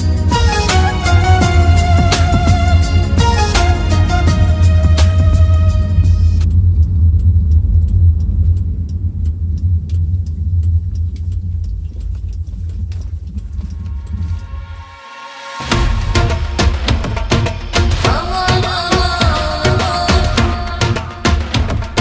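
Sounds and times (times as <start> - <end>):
music: 0.0 - 6.5, 14.2 - 22.0
car engine and road noise: 0.0 - 19.3.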